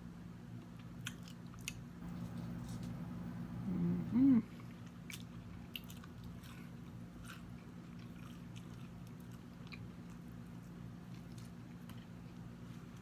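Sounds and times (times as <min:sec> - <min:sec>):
steady low hum: 0:02.0 - 0:04.4.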